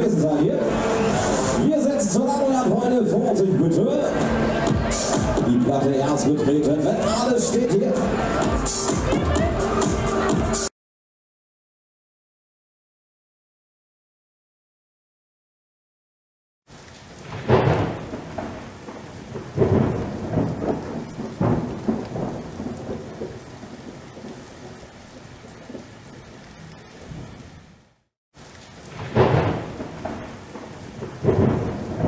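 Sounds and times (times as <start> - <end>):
steady rain: 0.0 - 10.7, 16.7 - 32.0
rolling thunder: 17.1 - 26.1, 28.8 - 32.0.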